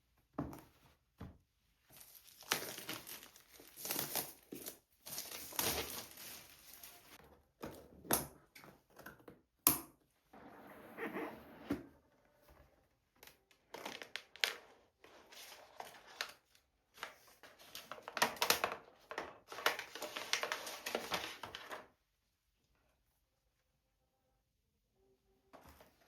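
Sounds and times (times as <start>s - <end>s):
packaging crinkling and rustling: 1.9s - 7.2s, 17.0s - 21.8s.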